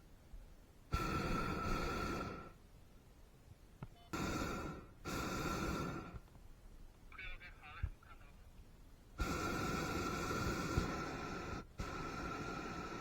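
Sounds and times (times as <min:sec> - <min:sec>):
propane burner roaring: 0:00.9 - 0:02.6, 0:04.1 - 0:06.4, 0:09.2 - 0:13.0.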